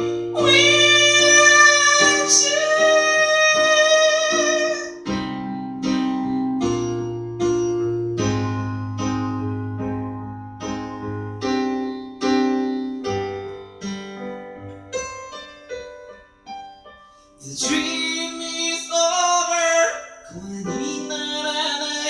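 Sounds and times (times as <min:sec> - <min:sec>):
piano playing slow chords: 0:00.0 - 0:22.0.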